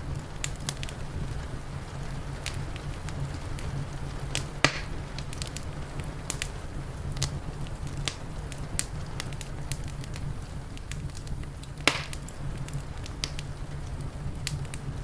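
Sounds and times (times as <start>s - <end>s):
steady low rumble: 0.0s - 15.0s
wood fire crackling: 0.0s - 15.0s.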